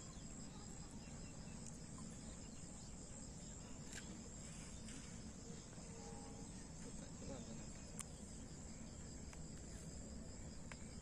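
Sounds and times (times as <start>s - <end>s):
faint low outdoor background noise: 0.0s - 11.0s
insects chirring: 0.0s - 11.0s
small click: 3.9s - 4.2s.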